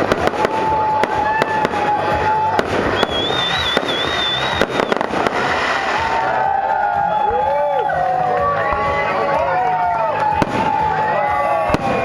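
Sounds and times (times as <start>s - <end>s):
long steady firework whistle: 0.0s - 9.1s, 9.7s - 12.0s
fireworks crackling and popping: 0.0s - 12.0s
high wavering whistle: 2.9s - 5.1s.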